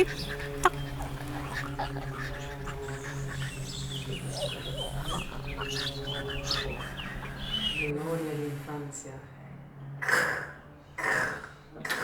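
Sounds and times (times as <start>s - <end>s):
birds chirping and trilling: 0.0s - 12.0s.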